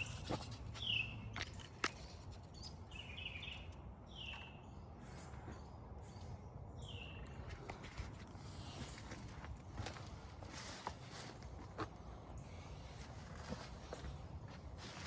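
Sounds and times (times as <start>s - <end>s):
bird chirping: 0.0s - 8.1s
faint background hum: 0.0s - 15.0s.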